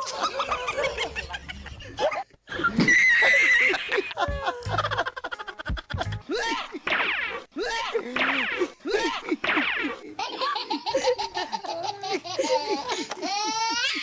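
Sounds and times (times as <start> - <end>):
people laughing and giggling: 0.0 - 6.9, 8.0 - 14.0
background music: 3.7 - 8.1.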